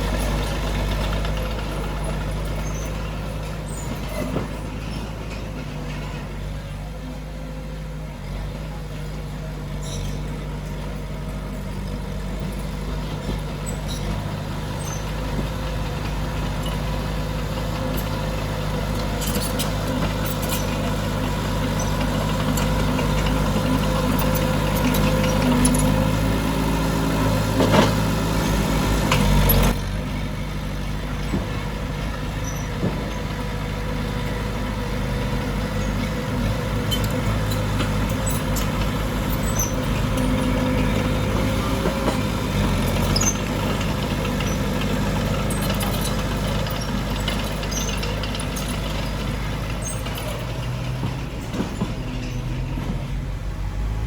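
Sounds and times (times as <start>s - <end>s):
diesel earthmoving machinery running: 0.0s - 54.0s
metal clanks and clicks: 18.9s - 26.2s, 36.8s - 53.0s.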